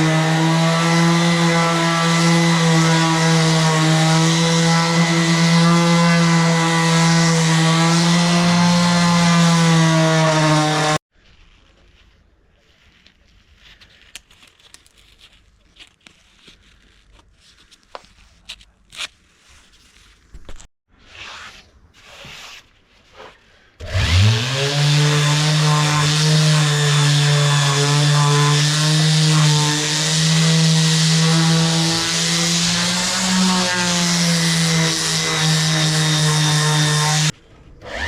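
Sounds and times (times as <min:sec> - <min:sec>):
electric power tool running: 0:23.8 - 0:38.0.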